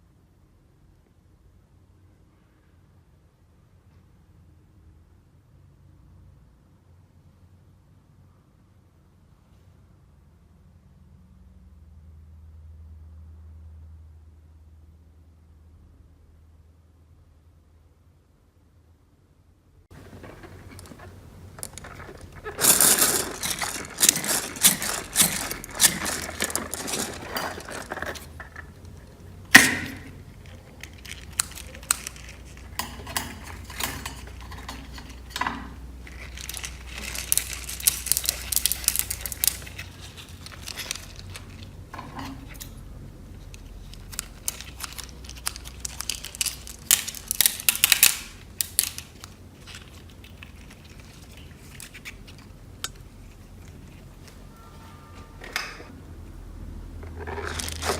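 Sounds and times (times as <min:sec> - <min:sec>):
slime with beads crackling: 0:20.2 - 0:33.6, 0:36.0 - 0:41.8, 0:43.5 - 0:52.4, 0:57.2 - 0:57.9.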